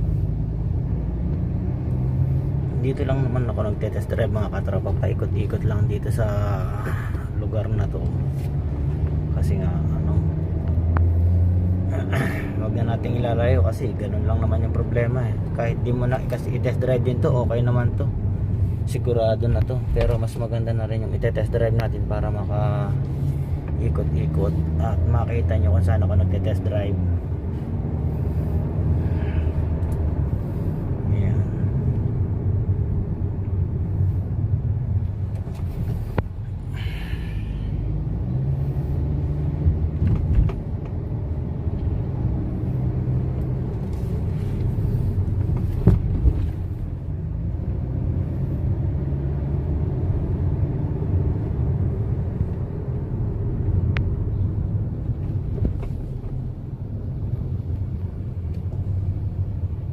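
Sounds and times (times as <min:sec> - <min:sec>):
car engine and road noise: 0:00.0 - 0:59.9
short thumps: 0:44.6 - 0:46.7.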